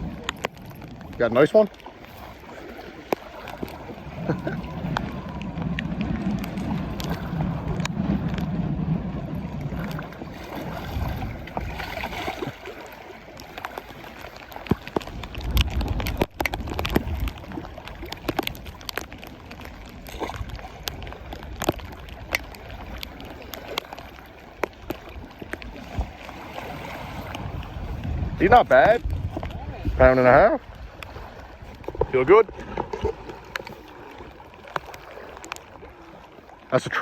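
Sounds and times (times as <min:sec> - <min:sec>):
water splashing and sloshing: 0:00.0 - 0:37.0
low rumbles: 0:26.9 - 0:36.0.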